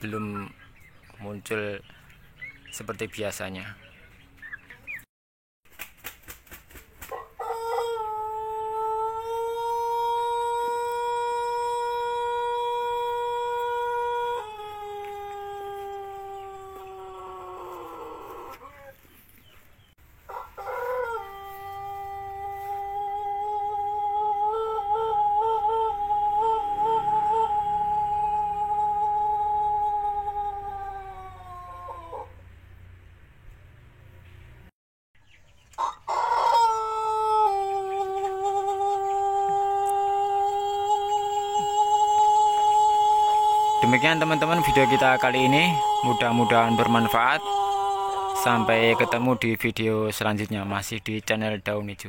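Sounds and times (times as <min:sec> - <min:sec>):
rooster crowing: 0:07.2 - 0:19.0, 0:20.2 - 0:32.4, 0:35.8 - 0:49.7.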